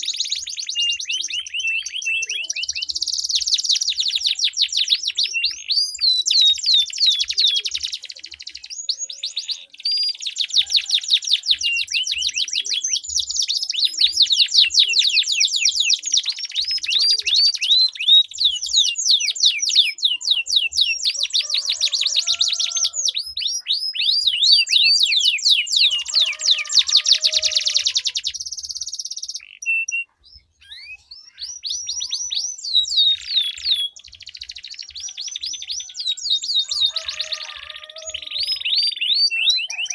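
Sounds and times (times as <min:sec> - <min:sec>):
canaries singing trills: 0:00.0 - 0:39.9.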